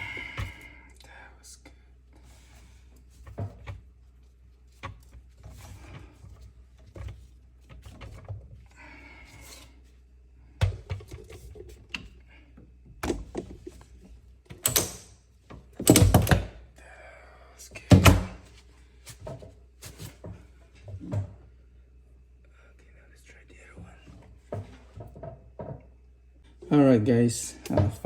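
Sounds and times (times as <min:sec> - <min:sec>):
tools and pipe parts clattering: 0:13.0 - 0:16.6.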